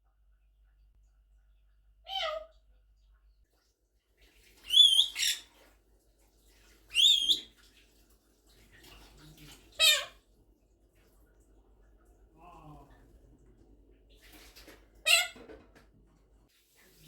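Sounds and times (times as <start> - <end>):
parrot imitating cat meow: 2.1 - 2.5.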